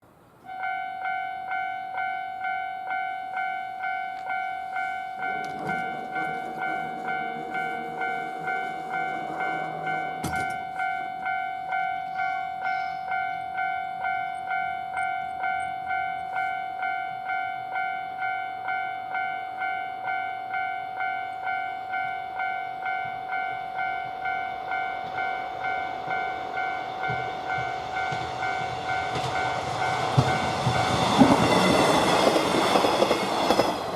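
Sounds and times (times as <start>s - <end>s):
level crossing warning bell: 0.4s - 33.9s
train rumble: 3.3s - 17.0s, 20.6s - 33.9s.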